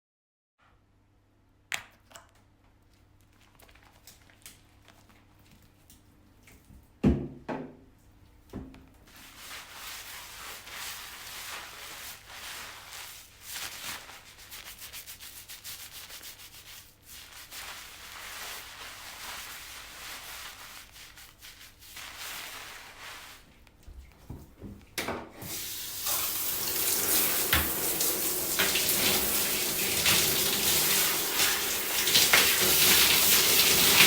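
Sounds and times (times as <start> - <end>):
shower water spraying: 9.1 - 23.6, 25.4 - 34.0.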